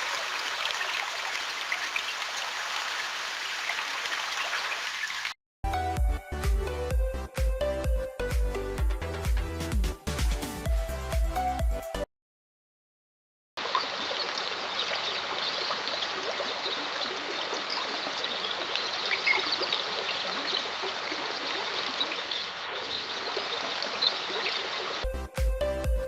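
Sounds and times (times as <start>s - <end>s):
small water splashes: 0.0s - 5.4s, 13.6s - 25.0s
stream water trickling: 0.0s - 5.4s, 13.6s - 25.0s.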